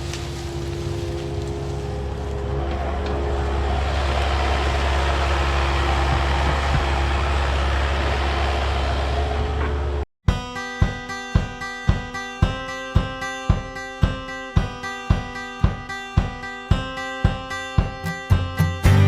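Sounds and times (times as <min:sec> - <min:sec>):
heavy diesel engine running: 0:00.0 - 0:10.0.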